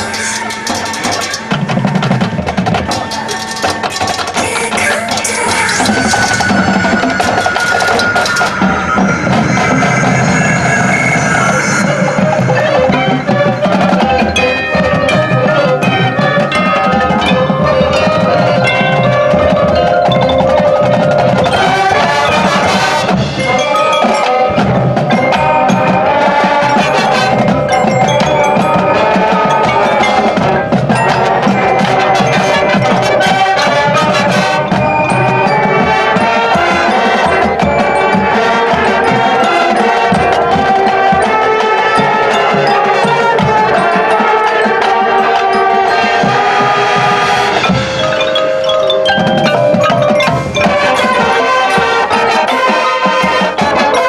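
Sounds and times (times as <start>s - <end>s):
marching band playing: 0.0s - 54.0s.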